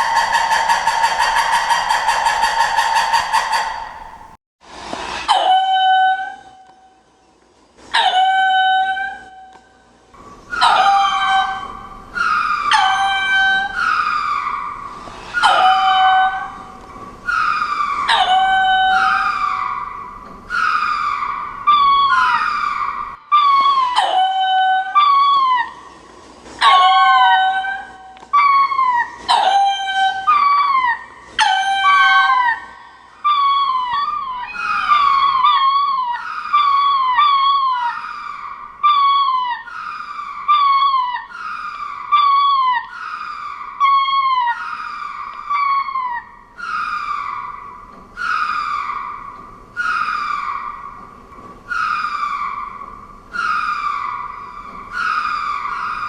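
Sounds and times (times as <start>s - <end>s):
shrill wavering creature calls: 0.0s - 4.3s, 10.5s - 25.9s, 26.6s - 47.5s.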